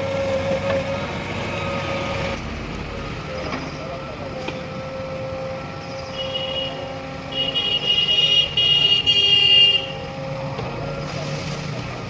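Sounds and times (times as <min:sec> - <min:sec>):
diesel engine running: 0:00.0 - 0:12.0
high-pitched vehicle horn: 0:06.2 - 0:10.0.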